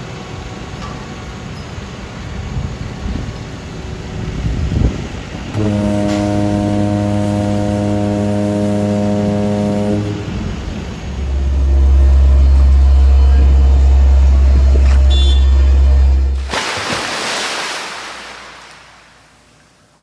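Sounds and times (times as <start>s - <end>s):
street rumble of traffic: 0.0s - 16.5s
long horn blast: 5.5s - 16.6s.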